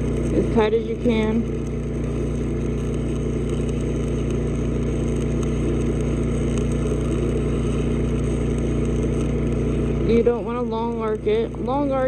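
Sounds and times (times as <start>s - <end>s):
welding arc crackling: 0.0s - 12.0s
welding arc hum: 0.0s - 12.0s.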